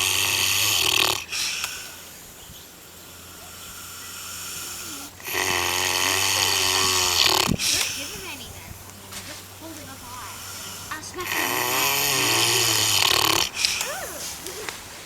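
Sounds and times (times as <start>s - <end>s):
pig snoring: 0.0s - 15.0s.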